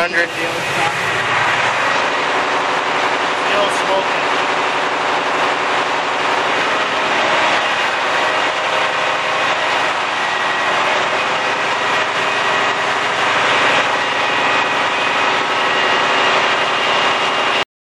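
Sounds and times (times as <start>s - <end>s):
diesel truck engine idling: 0.0s - 17.5s.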